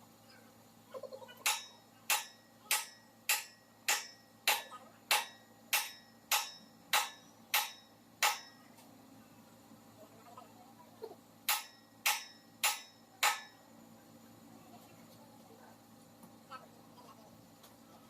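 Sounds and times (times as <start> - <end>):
hammer striking metal: 1.4 - 8.7, 11.5 - 13.6.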